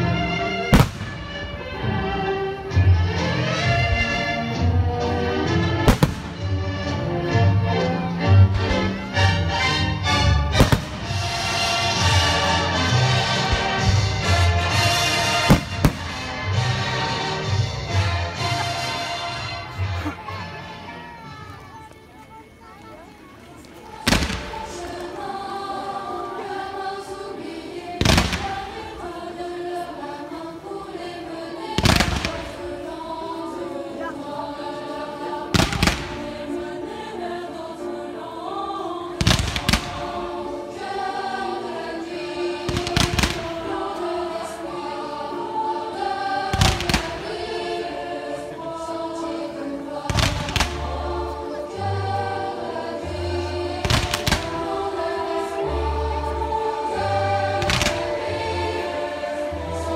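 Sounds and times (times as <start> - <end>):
music with choir singing: 0.0 - 59.9
fireworks bursting: 0.6 - 1.6, 5.7 - 6.8, 10.4 - 19.2, 23.8 - 25.9, 27.9 - 29.2, 31.6 - 33.0, 35.5 - 36.5, 39.2 - 40.4, 42.6 - 44.2, 46.4 - 47.7, 50.0 - 51.1, 53.8 - 55.0, 56.8 - 58.9.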